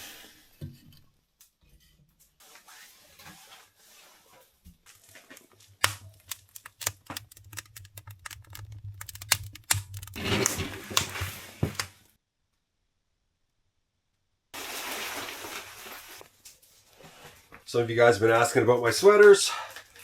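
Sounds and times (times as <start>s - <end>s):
wood fire crackling and popping: 5.8s - 12.0s.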